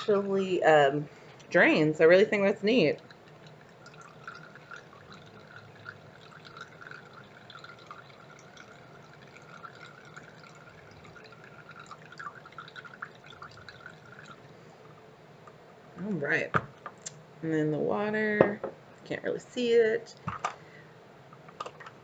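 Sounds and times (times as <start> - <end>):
water trickling and dripping: 1.4 - 15.0.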